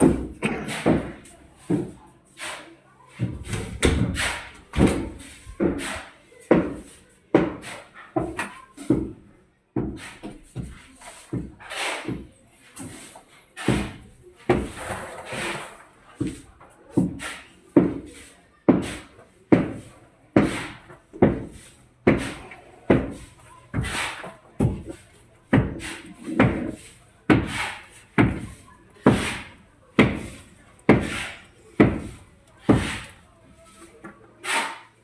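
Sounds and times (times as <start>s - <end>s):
hammer striking wood: 20.4s - 24.9s, 27.3s - 33.2s.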